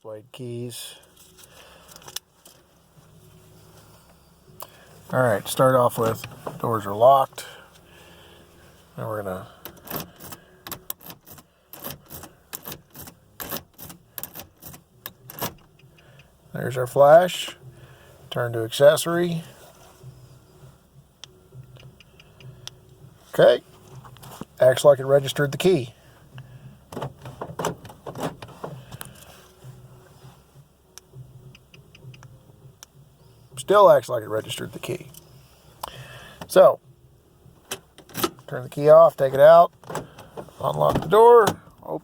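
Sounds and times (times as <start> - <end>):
car key clicking in ignition: 9.6 - 16.3, 31.0 - 33.0
key-ring rattling: 9.7 - 15.7.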